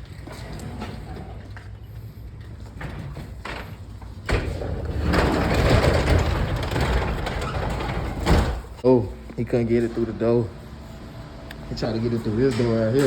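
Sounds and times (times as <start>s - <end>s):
rumbling scrape and clatter: 0.0s - 8.8s.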